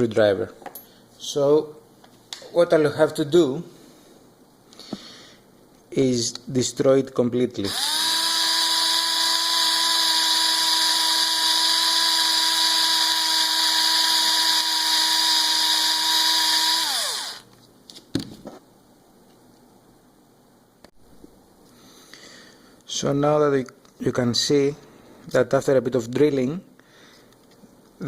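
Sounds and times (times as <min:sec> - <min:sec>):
electric drill whining: 0:07.7 - 0:17.5.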